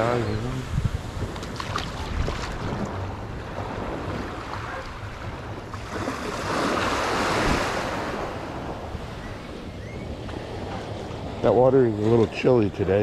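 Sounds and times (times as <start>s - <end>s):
surf washing onto beach: 0.0s - 9.6s
wind buffeting microphone: 0.0s - 13.0s.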